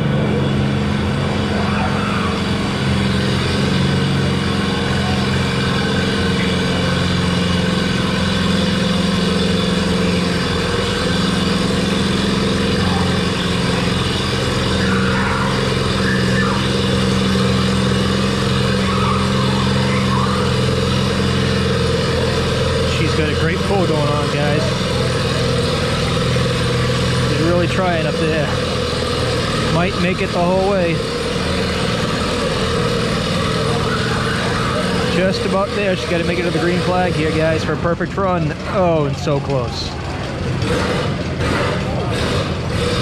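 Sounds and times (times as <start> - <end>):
tractor engine running under load: 0.0 - 43.0.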